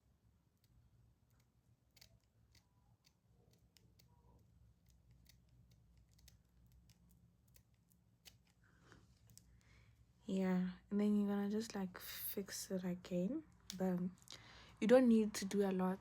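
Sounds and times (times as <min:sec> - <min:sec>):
scissors snipping: 0:00.6 - 0:08.6.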